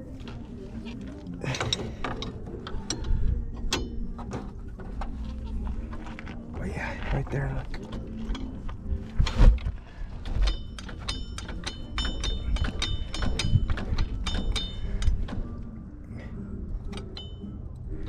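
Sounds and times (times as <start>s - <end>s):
metal hand tools clinking: 10.4s - 15.2s.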